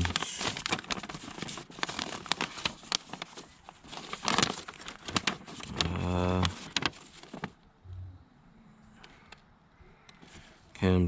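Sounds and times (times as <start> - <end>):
paper crinkling and rustling: 0.0 - 7.6.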